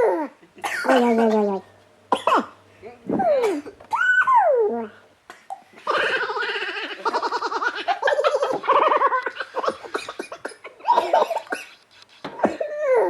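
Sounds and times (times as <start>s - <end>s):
person laughing: 5.8s - 11.8s.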